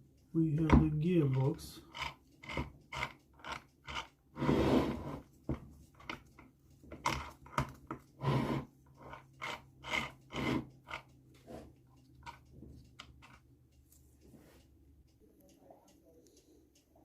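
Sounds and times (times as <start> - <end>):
metal parts and tools clicking: 11.9 - 13.5.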